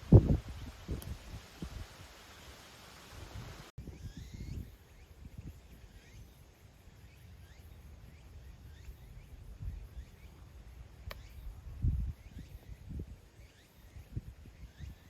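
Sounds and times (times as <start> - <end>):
wind rumble on microphone: 0.0 - 2.3, 3.1 - 6.2, 7.8 - 15.0
faint bird chirps: 3.8 - 15.0.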